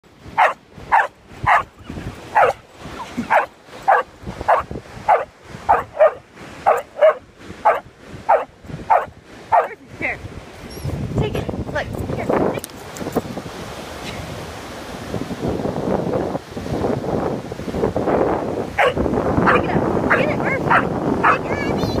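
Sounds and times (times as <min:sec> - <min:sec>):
dog barking: 0:00.4 - 0:01.7, 0:02.3 - 0:02.6, 0:03.2 - 0:09.8, 0:18.8 - 0:21.5.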